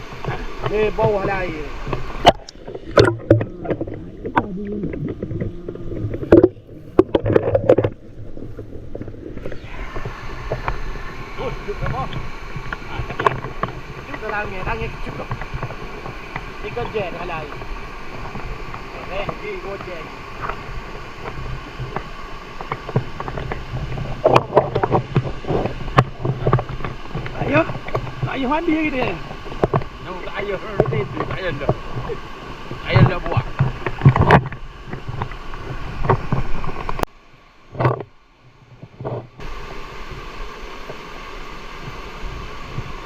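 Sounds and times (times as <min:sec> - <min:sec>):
waterfall rushing: 0:00.0 - 0:20.4
rushing water: 0:00.0 - 0:43.0
underwater bubbling: 0:00.0 - 0:43.0
underwater clicks and knocks: 0:00.2 - 0:10.8, 0:11.7 - 0:20.6, 0:21.2 - 0:28.3, 0:29.2 - 0:30.0, 0:30.7 - 0:32.2, 0:32.8 - 0:37.1, 0:37.7 - 0:38.2, 0:38.8 - 0:39.5
sharp splashes and knocks: 0:01.9 - 0:10.7.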